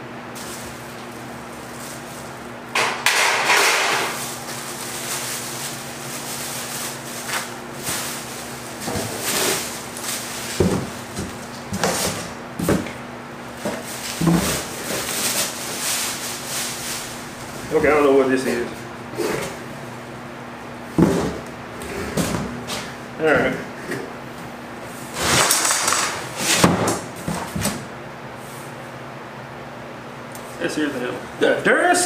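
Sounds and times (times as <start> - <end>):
steady low hum: 0.0 - 31.7
cardboard rustling and scraping: 3.8 - 19.6, 25.0 - 27.8.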